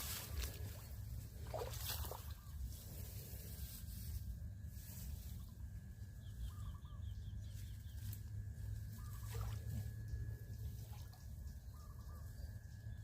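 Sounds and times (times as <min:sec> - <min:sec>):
steady low rumble: 0:00.0 - 0:13.0
small high bird chirps: 0:06.2 - 0:08.2.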